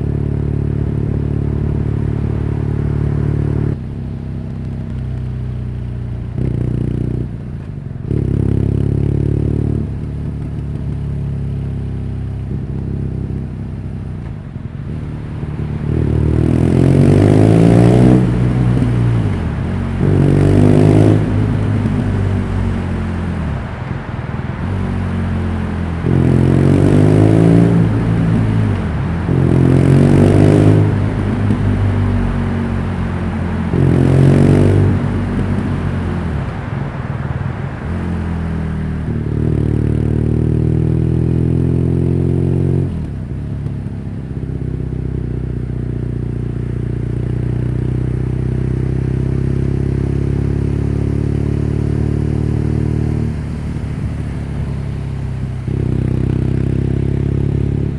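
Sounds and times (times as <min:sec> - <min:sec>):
motorcycle engine revving: 0:00.0 - 0:57.9.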